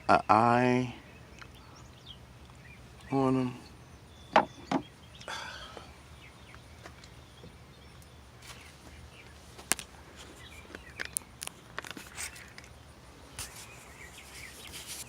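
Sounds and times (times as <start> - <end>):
quiet outdoor background: 0.0 - 15.0
rustle: 0.5 - 15.0
sharp knocks: 4.3 - 4.8.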